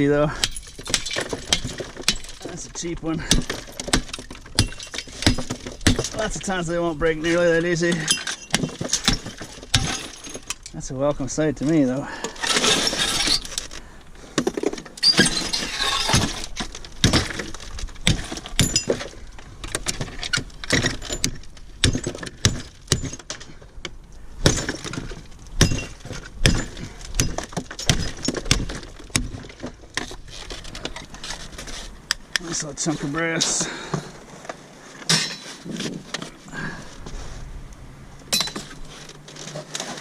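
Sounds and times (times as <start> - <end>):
metal pieces clinking and crunching: 0.2 - 10.8, 12.2 - 13.8, 14.7 - 23.5, 35.1 - 35.6, 38.3 - 40.0
scrap metal being smashed: 0.3 - 10.7, 12.1 - 13.8, 14.4 - 23.6, 24.4 - 31.9, 35.0 - 36.8.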